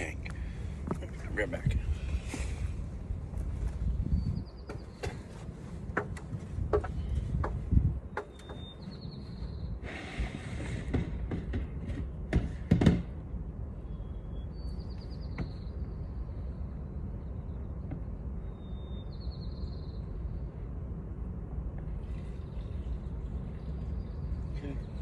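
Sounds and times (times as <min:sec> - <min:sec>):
steady low rumble: 0:00.0 - 0:25.0
knocks: 0:10.8 - 0:13.2.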